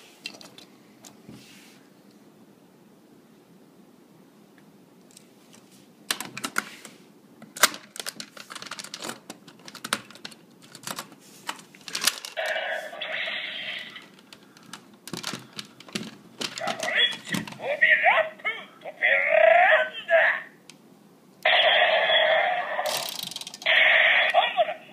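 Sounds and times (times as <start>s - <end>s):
toy speaker electronic sound: 12.4s - 14.0s, 16.6s - 18.3s, 21.4s - 24.9s
plastic toy gun clicking: 22.9s - 23.7s.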